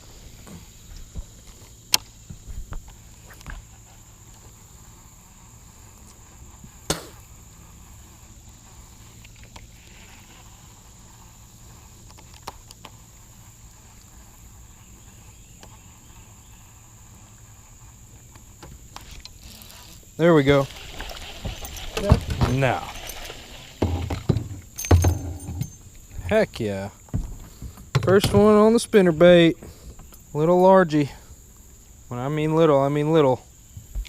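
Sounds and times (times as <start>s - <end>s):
high-pitched insect drone: 0.0s - 27.2s.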